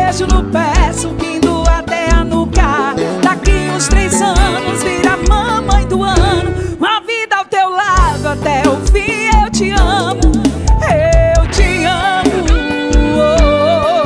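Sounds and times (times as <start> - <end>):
love song with sung vocal: 0.0 - 14.0.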